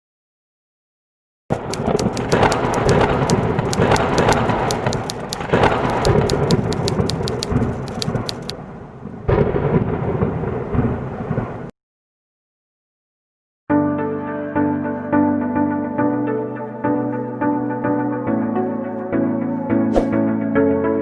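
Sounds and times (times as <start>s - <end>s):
crackling electric snaps: 1.5s - 8.5s
rolling thunder rumble: 8.6s - 11.7s.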